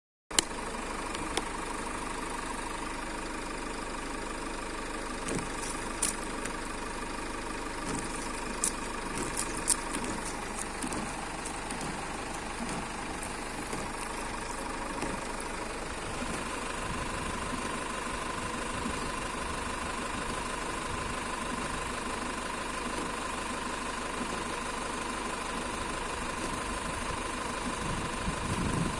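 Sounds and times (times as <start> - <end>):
car engine idling: 0.3 - 28.9
sharp clicks and knocks: 5.2 - 6.7, 7.8 - 15.4.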